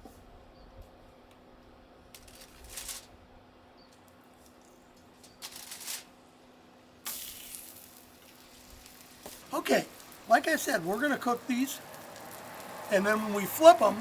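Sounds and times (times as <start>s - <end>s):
griddle hissing: 7.0s - 14.0s
food sizzling on griddle: 7.1s - 14.0s.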